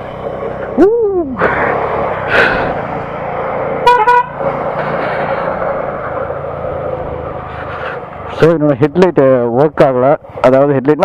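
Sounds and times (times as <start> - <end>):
motorcycle running in traffic: 0.0 - 11.0
vehicle horn toots: 3.8 - 4.4.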